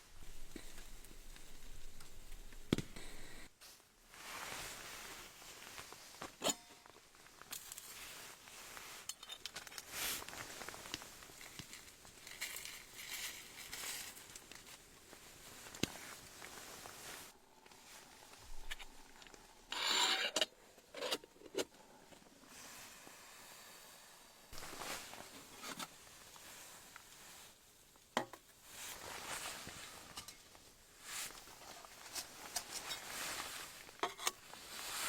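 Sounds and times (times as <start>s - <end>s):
rustling and crinkling: 0.0s - 19.7s, 20.5s - 35.0s.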